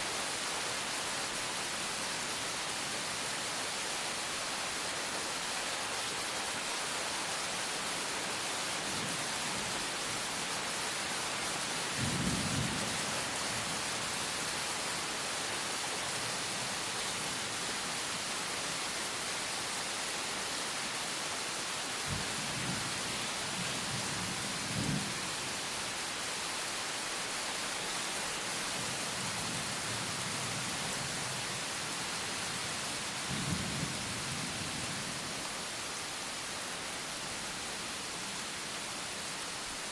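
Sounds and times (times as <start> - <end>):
steady rain falling: 0.0 - 39.9
low rumbles of thunder: 23.5 - 25.2, 33.2 - 35.2.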